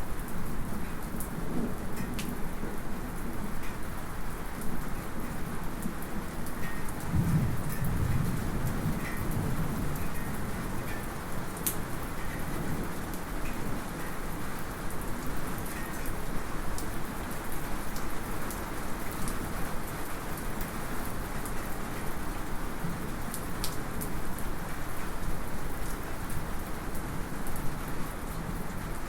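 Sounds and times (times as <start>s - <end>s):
light rain falling: 0.0s - 29.0s
low roll of thunder: 7.1s - 10.6s.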